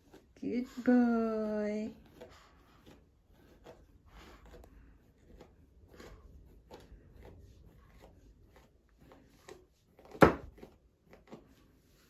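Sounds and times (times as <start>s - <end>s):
brush scratching through fur: 0.0s - 12.0s.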